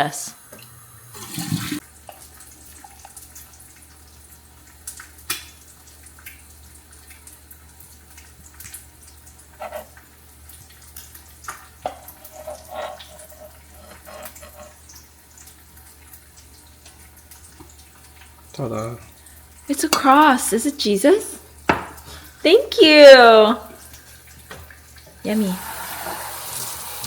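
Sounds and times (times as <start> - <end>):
liquid pouring: 1.2 - 20.3
cups and utensils clinking: 19.8 - 20.3.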